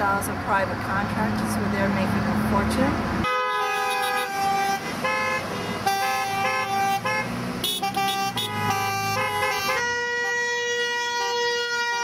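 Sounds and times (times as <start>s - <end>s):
car horns honking: 3.2s - 12.0s.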